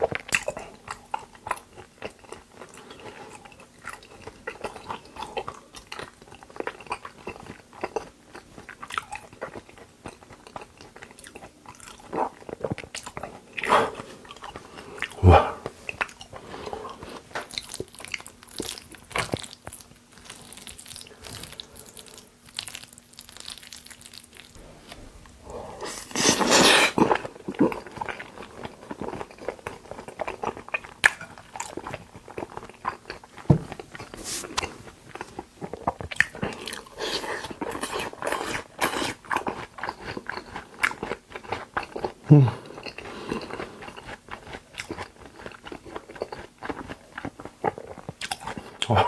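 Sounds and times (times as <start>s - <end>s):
chewing and biting meat: 17.5s - 49.0s.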